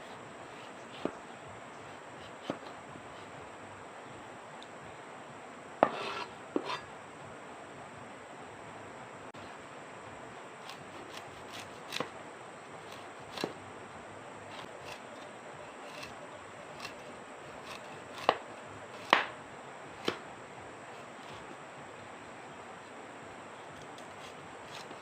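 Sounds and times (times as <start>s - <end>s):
peeler blade scraping vegetable: 5.9s - 6.9s, 10.6s - 12.1s, 12.8s - 13.6s, 14.5s - 19.2s, 23.7s - 25.0s.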